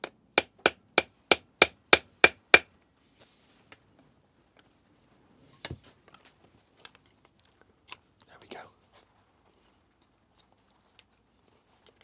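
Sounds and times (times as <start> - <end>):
hammer tapping on metal: 0.0 - 2.7.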